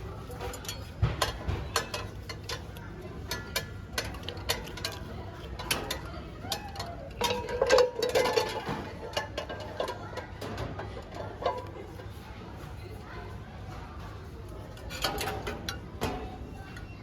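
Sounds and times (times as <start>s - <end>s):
dishes clinking: 3.3s - 11.9s.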